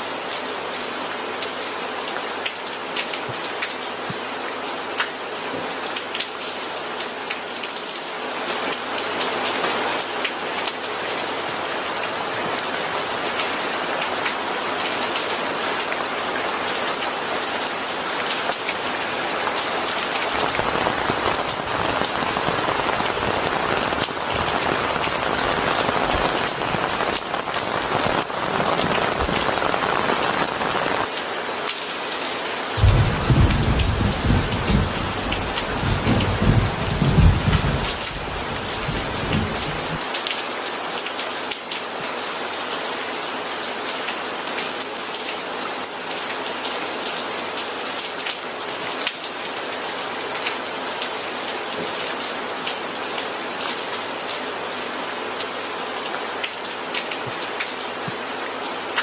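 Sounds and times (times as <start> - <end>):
rain pattering: 0.0 - 59.0
low rumble of thunder: 32.8 - 40.0.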